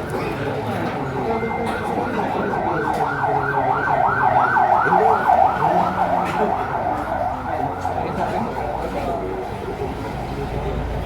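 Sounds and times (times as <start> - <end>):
electronic siren yelping: 1.5 - 8.0.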